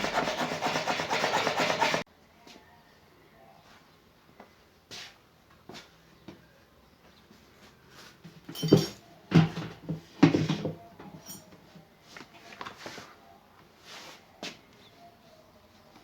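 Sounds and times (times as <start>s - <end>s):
tools clinking and knocking: 8.5s - 11.6s.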